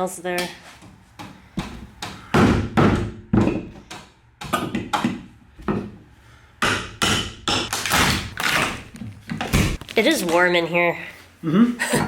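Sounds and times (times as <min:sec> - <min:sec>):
hammer knocking on wood: 0:01.2 - 0:06.0.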